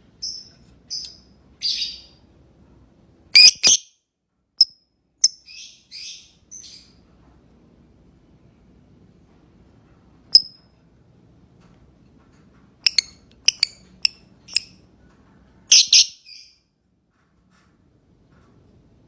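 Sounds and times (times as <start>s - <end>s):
bird shrill chirps: 3.4s - 3.9s, 15.7s - 16.6s.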